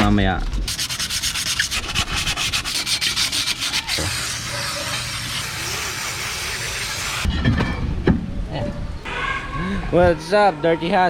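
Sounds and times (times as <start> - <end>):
sandpaper scraping brake shoe: 0.7 - 7.3.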